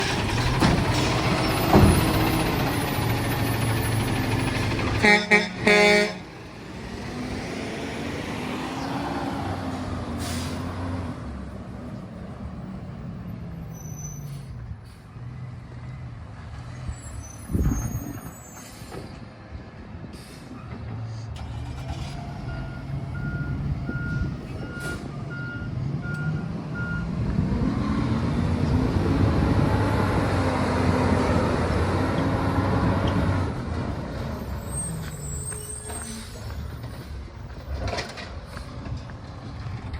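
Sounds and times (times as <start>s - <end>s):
diesel engine revving: 0.0s - 18.2s, 20.9s - 39.9s.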